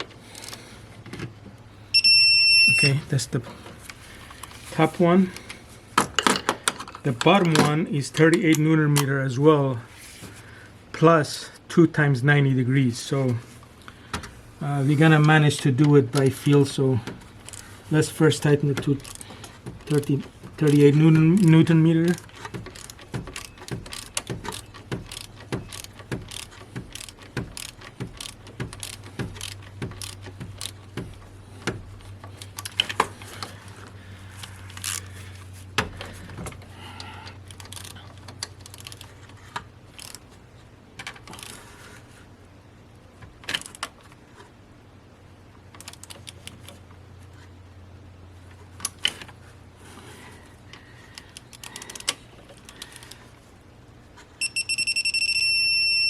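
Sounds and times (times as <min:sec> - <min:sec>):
ratchet wrench clicking: 0:22.7 - 0:30.8.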